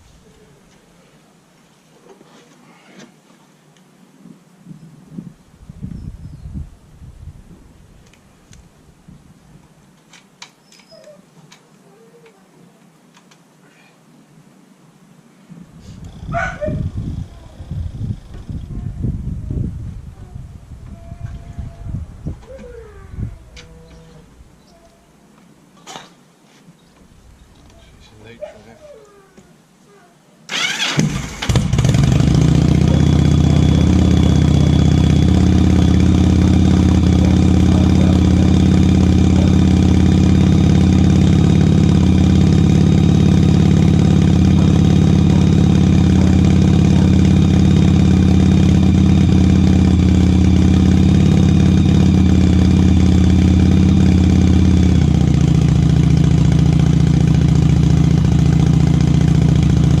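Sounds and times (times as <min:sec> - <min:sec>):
motorcycle engine idling: 0:30.5 - 1:00.0.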